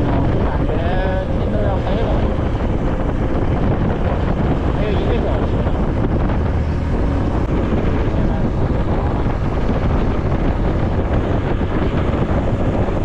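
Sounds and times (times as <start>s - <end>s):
motorcycle running: 0.0s - 13.0s
wind buffeting microphone: 0.0s - 13.0s.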